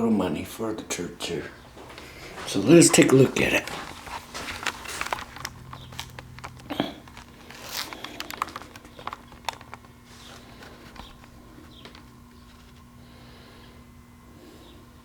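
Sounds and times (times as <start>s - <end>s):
low electrical hum: 0.0s - 15.0s
clicks taps and rustling: 1.7s - 12.9s.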